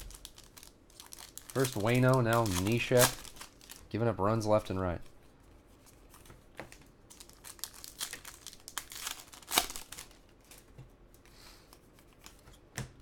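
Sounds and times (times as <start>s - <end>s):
wrapper snap: 0.0s - 3.8s, 7.1s - 10.2s
foil wrappers crinkling and tearing: 0.0s - 4.8s, 7.1s - 10.6s.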